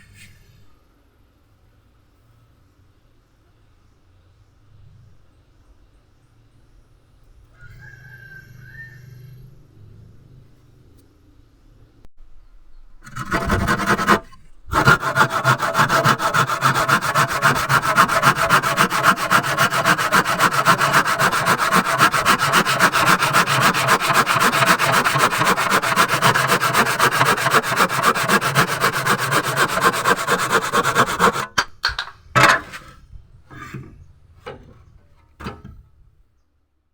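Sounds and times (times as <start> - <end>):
hand saw cutting wood: 13.0 - 33.9
wood knocking: 14.8 - 33.0.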